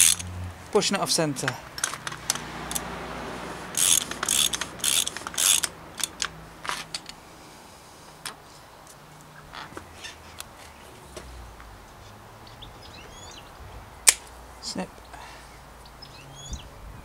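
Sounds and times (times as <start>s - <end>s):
ratchet wrench clicking: 0.0s - 0.3s, 1.4s - 2.9s, 3.7s - 7.1s.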